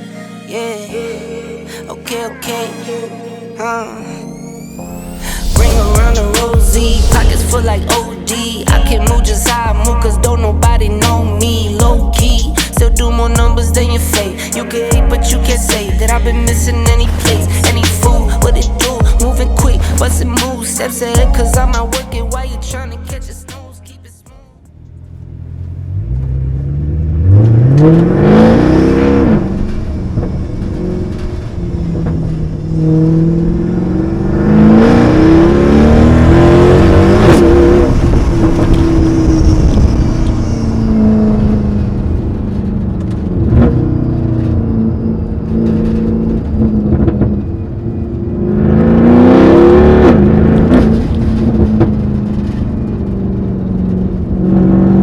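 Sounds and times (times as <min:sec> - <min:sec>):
car engine accelerating hard: 0:24.8 - 0:55.0.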